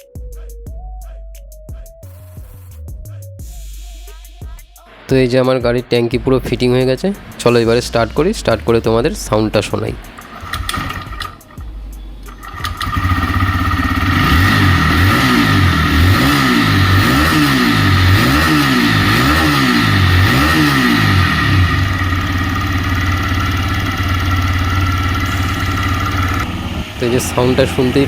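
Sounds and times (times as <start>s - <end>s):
motorcycle engine revving and idling: 10.0s - 28.0s.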